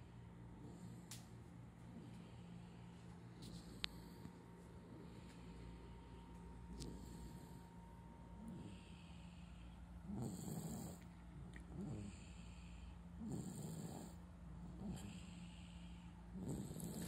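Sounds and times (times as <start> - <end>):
soft breathing: 0.0 - 17.0
person snoring: 8.4 - 11.0, 11.7 - 17.0.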